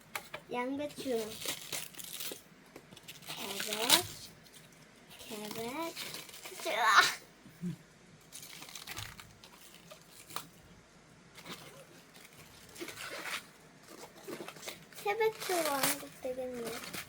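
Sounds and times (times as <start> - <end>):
cabbage leaves tearing: 11.4 - 17.0.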